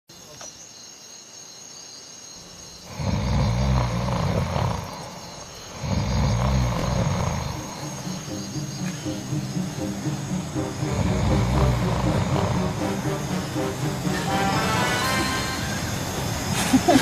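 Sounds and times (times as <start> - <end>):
crickets chirping: 0.1 - 17.0
man snoring loudly: 2.8 - 8.3, 9.4 - 14.6.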